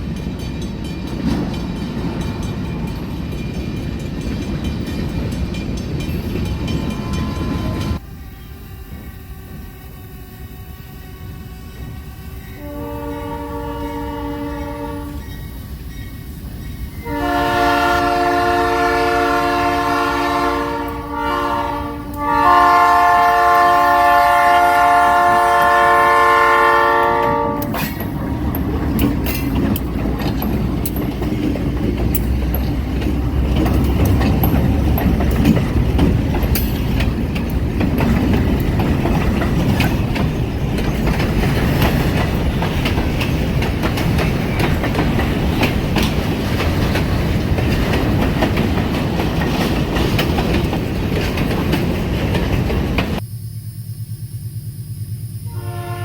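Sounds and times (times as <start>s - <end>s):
locomotive engine rumbling: 0.0s - 8.0s, 8.9s - 53.2s
train wheels clicking over rail joints: 0.0s - 8.0s, 27.1s - 53.2s
locomotive air horn blasts: 6.9s - 15.4s, 17.0s - 28.0s, 55.5s - 56.0s.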